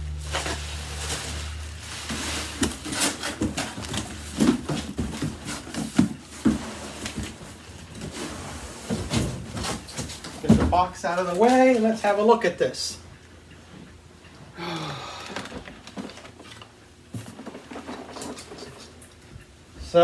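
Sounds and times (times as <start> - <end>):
low hum: 0.0 - 3.2
cardboard box knocks and scrapes: 0.2 - 10.8.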